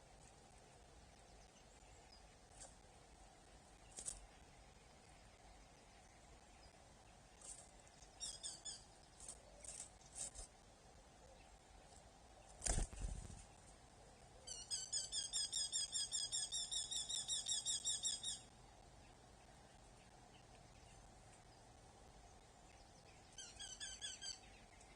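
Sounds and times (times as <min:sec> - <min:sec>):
faint high bird chirps: 0:07.9 - 0:09.8, 0:14.4 - 0:19.2, 0:22.7 - 0:24.9
sharp repeated bird calls: 0:08.2 - 0:08.9, 0:14.5 - 0:18.5, 0:23.3 - 0:24.6.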